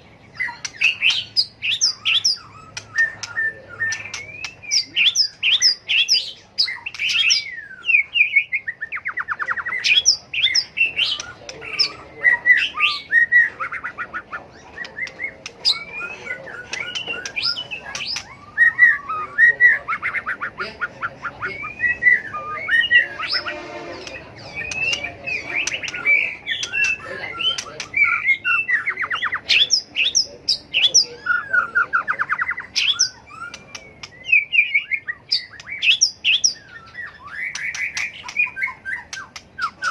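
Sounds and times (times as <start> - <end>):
bird singing whistled phrases: 0.3 - 20.6, 21.2 - 39.9.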